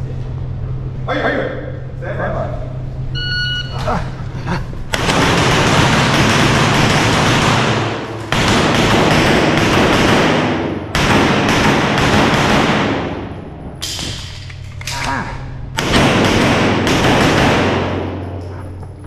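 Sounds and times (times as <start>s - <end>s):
rapid pistol shots: 4.9s - 14.4s, 15.8s - 18.4s.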